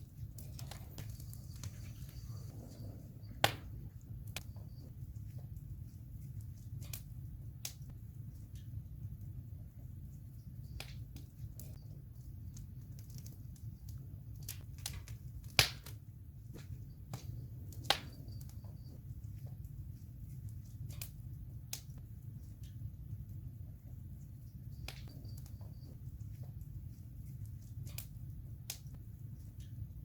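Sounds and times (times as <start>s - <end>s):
campfire crackling: 0.0s - 30.0s
low rumble of fire: 0.0s - 30.0s
loud sharp fire pops: 3.3s - 4.5s, 14.4s - 16.0s, 16.6s - 18.6s.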